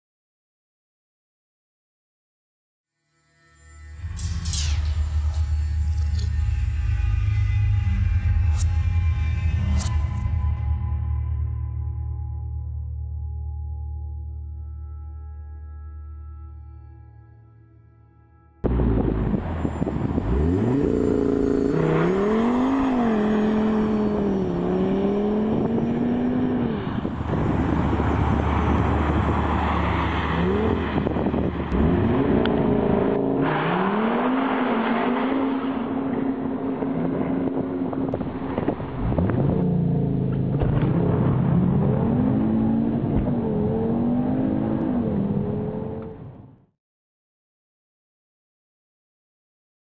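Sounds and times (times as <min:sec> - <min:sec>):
car engine accelerating hard: 0:18.6 - 0:46.6.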